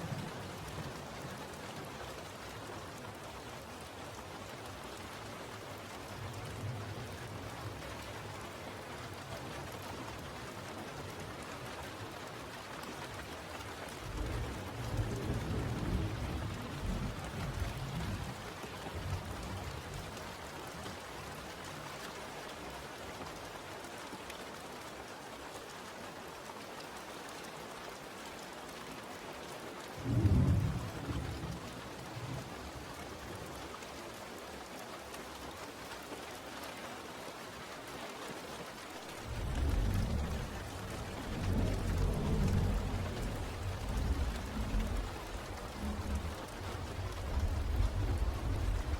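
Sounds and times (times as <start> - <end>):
steady rain: 0.0 - 48.9
low crack of thunder: 14.0 - 18.4, 30.0 - 32.6, 39.0 - 48.9
thunder rolling: 39.2 - 48.9.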